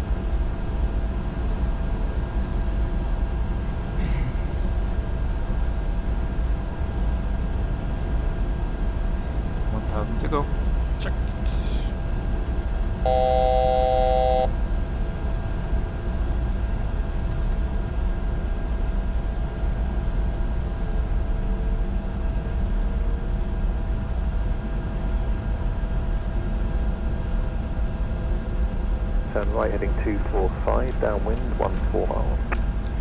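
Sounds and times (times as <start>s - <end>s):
airflow and engine rumble: 0.0s - 33.0s
electronic alert tone: 13.1s - 14.5s.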